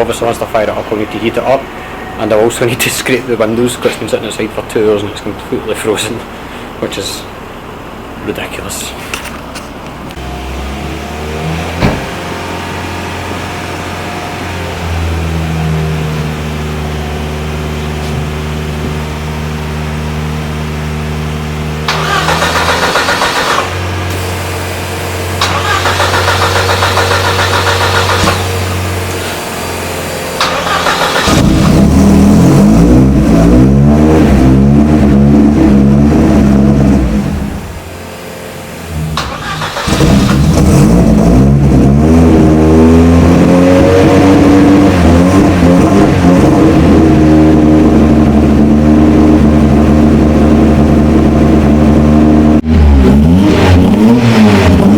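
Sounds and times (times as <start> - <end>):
car engine running at fast idle: 16.3 - 33.0
starter motor cranking: 21.9 - 23.8, 25.4 - 28.6, 30.4 - 31.9, 39.2 - 40.8.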